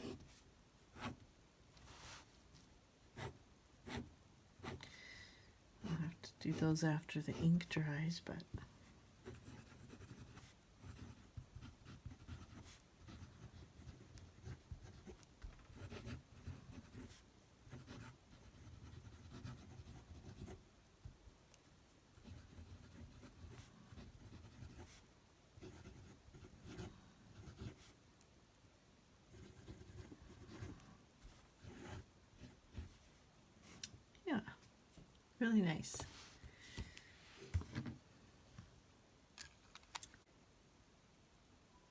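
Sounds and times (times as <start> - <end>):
fountain pen scratching on paper: 9.2 - 20.6, 22.2 - 25.0, 25.6 - 28.0, 29.3 - 30.8.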